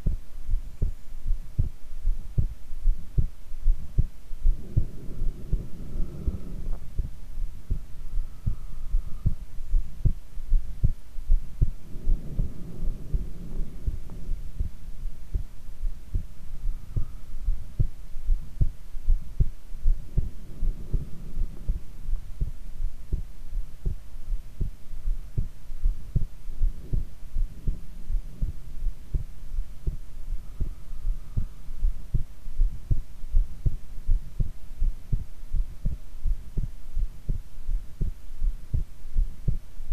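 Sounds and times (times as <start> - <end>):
muffled heartbeat: 0.0 - 39.9
low noise swell: 3.6 - 25.1.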